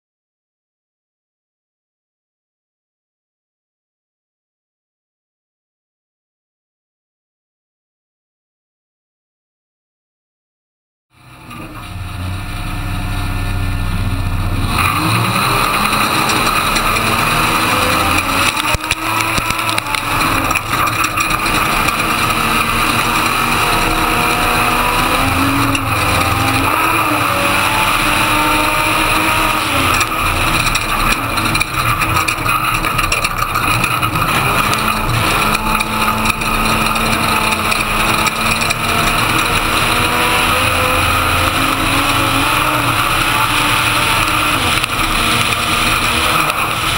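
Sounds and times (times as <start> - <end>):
road and wind noise: 11.1 - 46.9
truck engine accelerating: 11.1 - 46.9.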